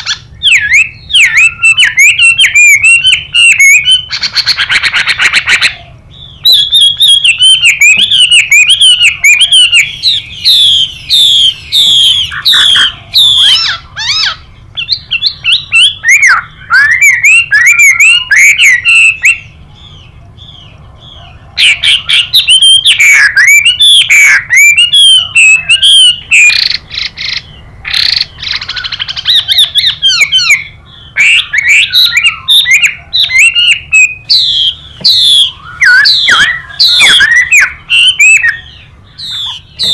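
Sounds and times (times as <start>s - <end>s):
bird singing whistled notes: 0.0s - 39.9s.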